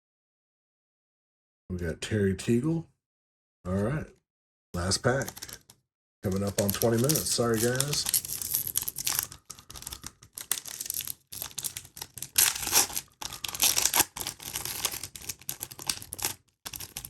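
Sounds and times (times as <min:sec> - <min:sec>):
card pack wrapper tearing and crinkling: 0:04.8 - 0:05.7, 0:06.3 - 0:17.0.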